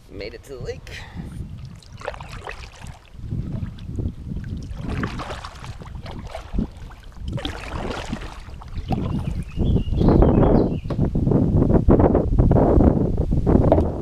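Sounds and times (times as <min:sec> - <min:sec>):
wind rumbling on microphone: 0:00.0 - 0:14.0
water splashing and sloshing: 0:01.0 - 0:10.0.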